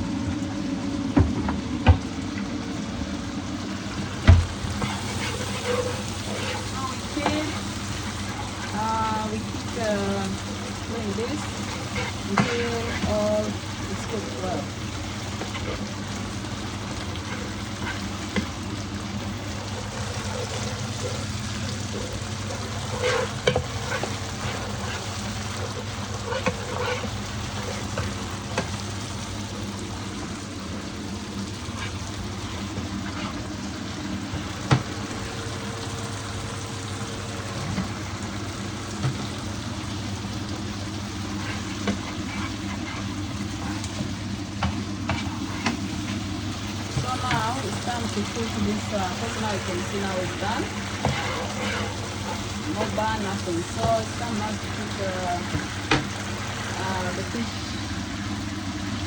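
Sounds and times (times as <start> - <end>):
fish sizzling in hot oil: 0.0 - 59.0
sharp knocks in a pan: 4.2 - 5.5, 34.3 - 35.0, 55.5 - 56.1.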